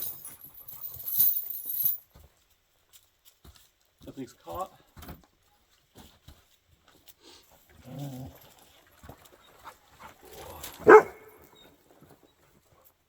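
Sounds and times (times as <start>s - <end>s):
low dog vocalization: 10.0s - 11.5s
dog barking: 10.8s - 11.4s.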